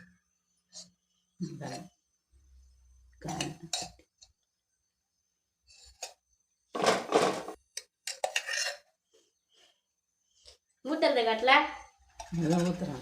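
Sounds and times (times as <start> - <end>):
metal pots and utensils clattering: 5.8 - 9.0, 12.0 - 13.0.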